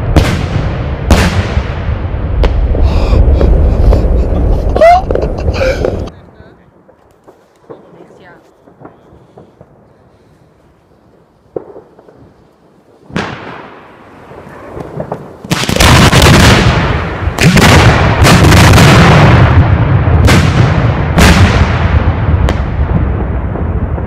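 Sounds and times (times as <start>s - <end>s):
sharp firework cracks: 0.0s - 6.1s, 6.9s - 10.0s, 11.1s - 24.0s
firework shells bursting: 11.5s - 19.3s.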